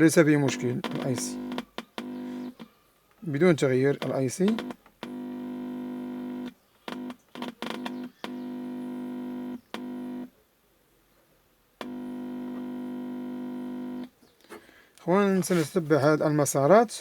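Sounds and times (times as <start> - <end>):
electrical hum through speakers: 0.0 - 10.5, 11.7 - 14.2.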